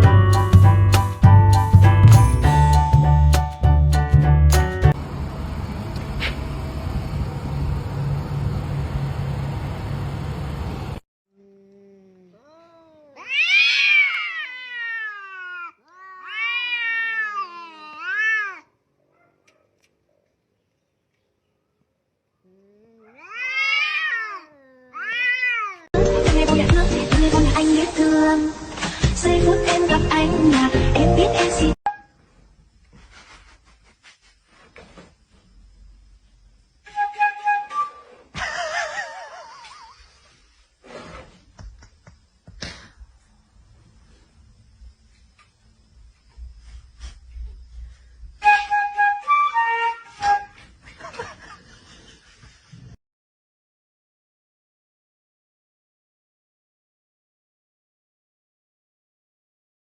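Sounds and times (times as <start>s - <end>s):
cat meowing loudly: 12.4s - 18.7s, 22.8s - 25.9s
flute-like whistling: 36.9s - 38.3s, 48.4s - 50.6s.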